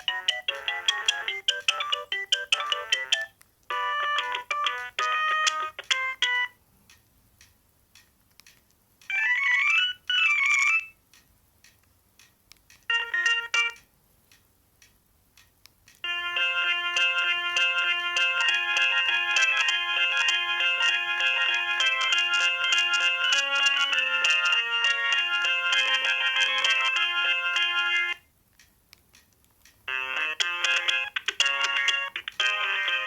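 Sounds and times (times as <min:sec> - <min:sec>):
electronic ringtone melodies: 0:00.0 - 0:06.6, 0:09.1 - 0:10.9, 0:12.9 - 0:13.8, 0:16.0 - 0:28.2, 0:29.9 - 0:33.0.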